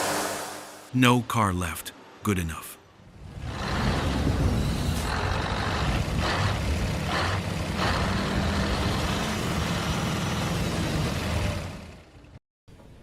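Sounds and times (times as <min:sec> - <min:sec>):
low engine rumble: 0:03.1 - 0:13.0.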